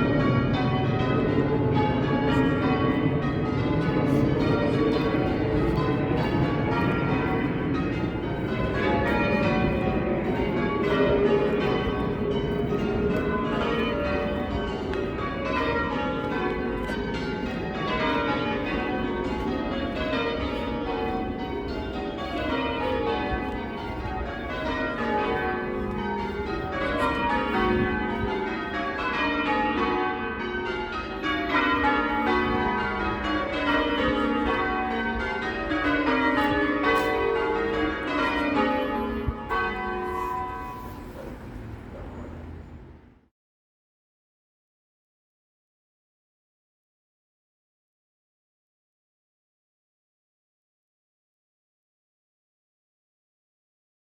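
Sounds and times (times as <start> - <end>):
church bells change ringing: 0.0 - 43.1.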